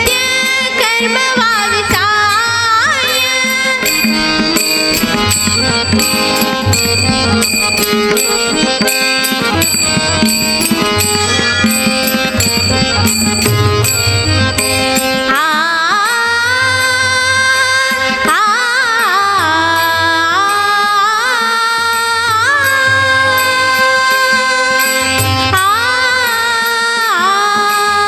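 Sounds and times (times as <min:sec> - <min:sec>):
held melody notes: 0:02.4 - 0:15.9
bright metallic clinks: 0:03.8 - 0:15.2.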